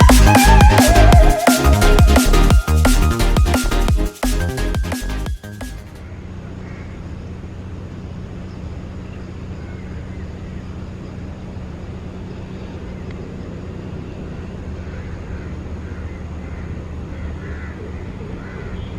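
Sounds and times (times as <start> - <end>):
electronic music: 0.0 - 6.0.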